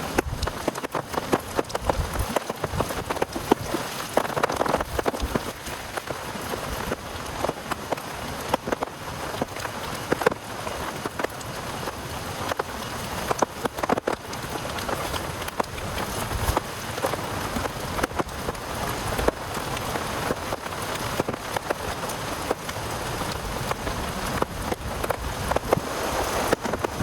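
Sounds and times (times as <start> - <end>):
raindrops tapping on a surface: 0.0 - 27.0
heavy rain hissing: 11.5 - 27.0.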